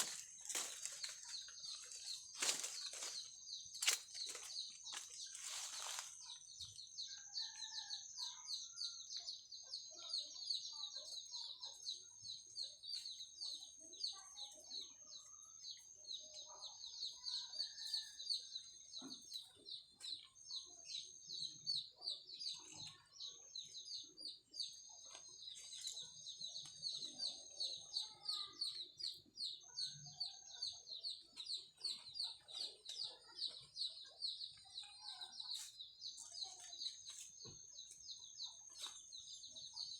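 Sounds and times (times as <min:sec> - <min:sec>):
birds chirping: 0:00.0 - 0:07.9, 0:10.1 - 0:39.9
chickens clucking: 0:24.0 - 0:37.3.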